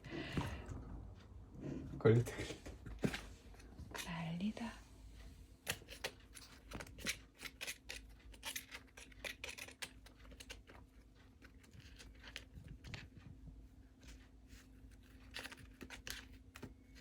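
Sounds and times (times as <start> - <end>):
kitten claws scratching: 5.6 - 13.4, 14.0 - 17.0.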